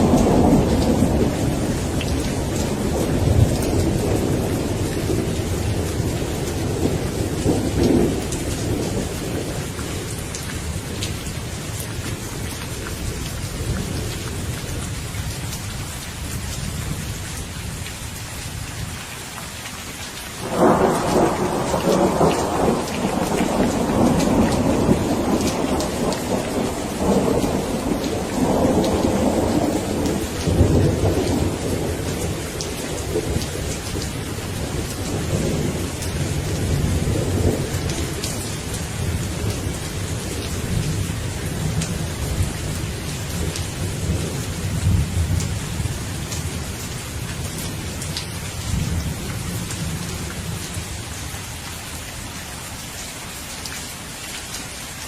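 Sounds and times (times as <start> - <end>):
thunder clap and rumble: 0.0 - 12.5, 20.4 - 50.8
steady rain: 0.0 - 55.0.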